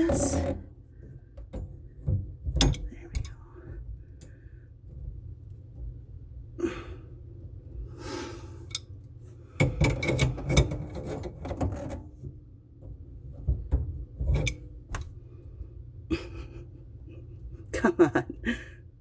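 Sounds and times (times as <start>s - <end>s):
knocks and rattles: 0.0s - 6.1s, 9.6s - 15.2s
metal wrench clinking and scraping: 9.6s - 12.0s.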